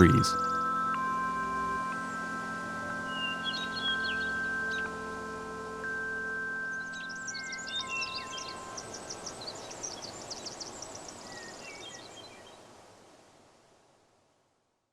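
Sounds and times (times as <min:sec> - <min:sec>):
soft outdoor hiss: 0:00.0 - 0:14.9
songbirds chirping and trilling: 0:03.0 - 0:12.5.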